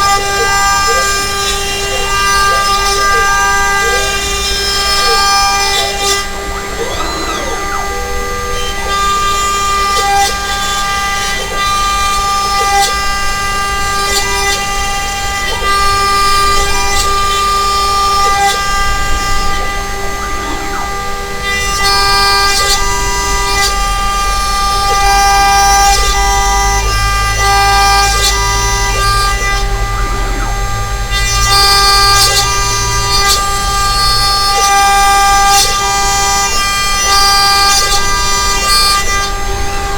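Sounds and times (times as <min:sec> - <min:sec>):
short machine tones: 0:00.0 - 0:13.2
router spindle whine: 0:00.0 - 0:39.9.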